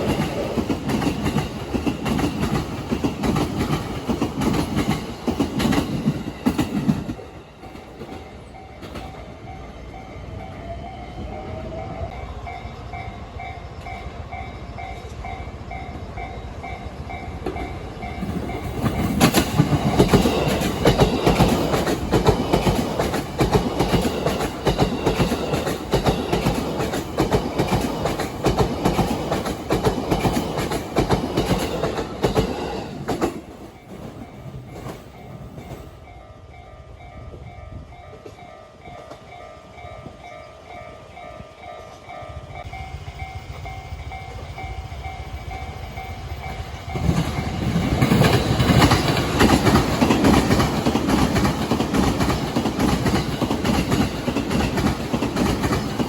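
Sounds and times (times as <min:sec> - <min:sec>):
train wheels clattering over joints: 0:00.0 - 0:09.2, 0:16.9 - 0:35.9, 0:46.5 - 0:56.0.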